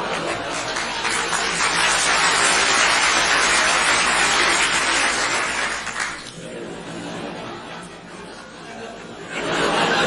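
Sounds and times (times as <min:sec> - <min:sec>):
studio audience applauding: 0:00.0 - 0:06.4.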